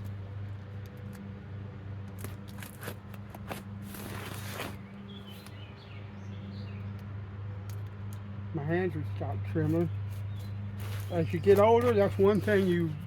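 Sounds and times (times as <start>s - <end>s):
rustling and scraping: 2.1s - 5.6s, 9.6s - 13.0s.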